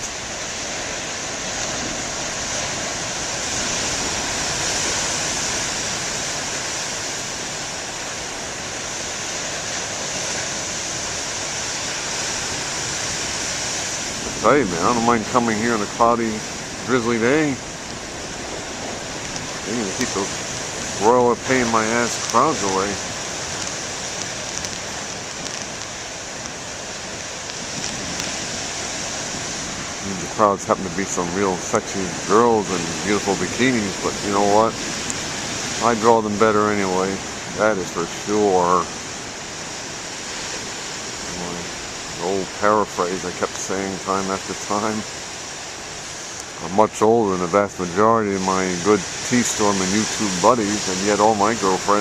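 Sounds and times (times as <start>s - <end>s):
ocean waves breaking: 0.0s - 52.0s
faint light ticks: 23.5s - 26.6s.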